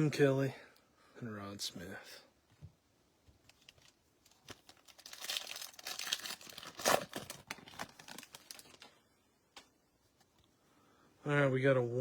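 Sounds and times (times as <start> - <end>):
foil wrapper crinkling and tearing: 3.6 - 8.9.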